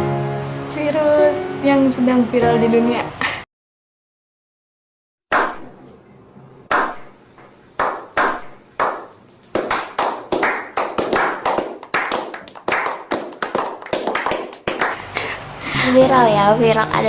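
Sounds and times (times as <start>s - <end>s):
hand claps: 7.8s - 15.1s.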